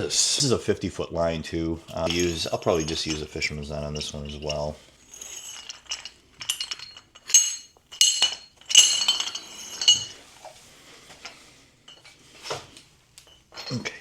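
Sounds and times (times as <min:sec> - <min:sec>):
soft handling noise: 0:01.6 - 0:14.0
metal anchor clinking: 0:01.9 - 0:10.2, 0:13.2 - 0:14.0.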